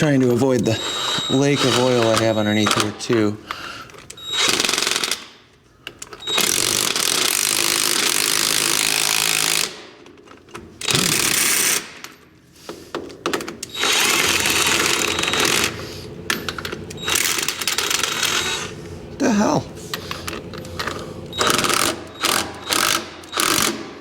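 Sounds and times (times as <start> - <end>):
impact wrench hammering: 21.4 - 24.0.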